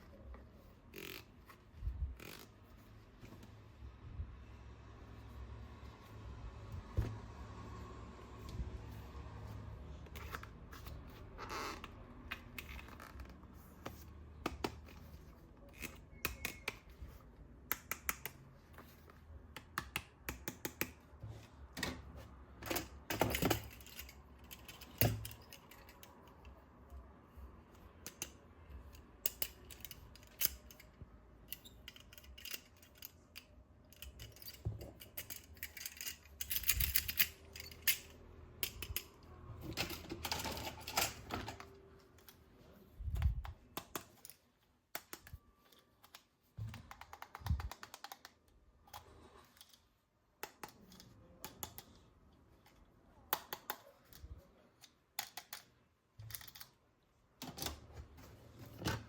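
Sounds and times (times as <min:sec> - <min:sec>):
plastic toy parts clicking: 0:15.6 - 0:17.0, 0:17.7 - 0:18.4, 0:22.7 - 0:26.6, 0:28.0 - 0:42.4, 0:43.2 - 0:56.8.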